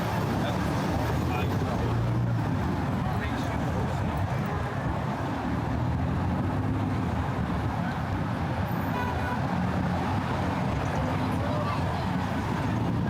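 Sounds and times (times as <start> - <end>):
street traffic rumble: 0.0 - 13.0.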